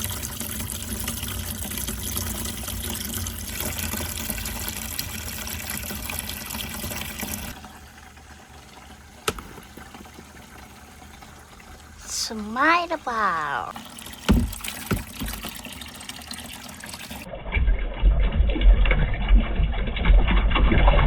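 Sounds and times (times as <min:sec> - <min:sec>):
water running through marble run: 0:00.0 - 0:21.0.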